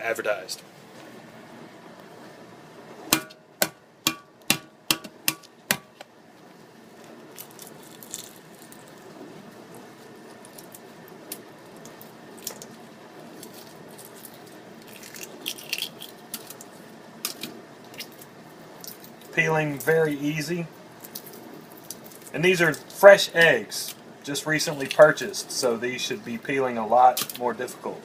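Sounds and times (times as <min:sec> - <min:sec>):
egg shell crackling peeled: 0:07.0 - 0:20.0, 0:20.9 - 0:23.0.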